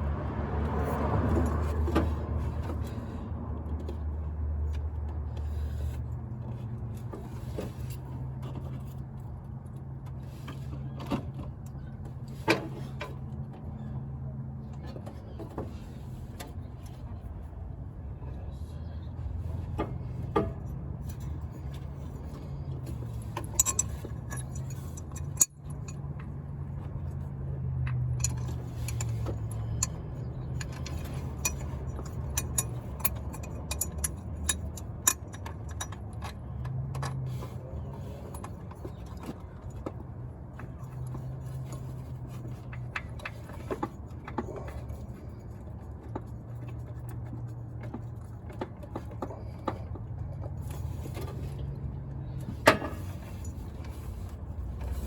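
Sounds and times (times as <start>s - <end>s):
metallic clinks of hand tools: 23.3s - 26.0s, 28.2s - 36.1s.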